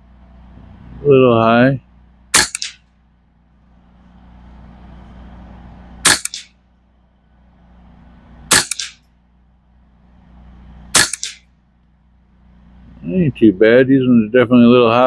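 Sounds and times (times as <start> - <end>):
rifle shots: 2.3 - 2.9, 6.0 - 6.6, 8.5 - 9.1, 10.9 - 11.5.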